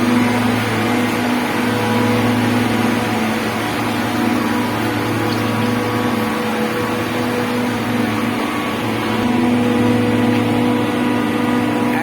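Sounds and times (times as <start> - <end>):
water pump motor humming: 0.0 - 12.0.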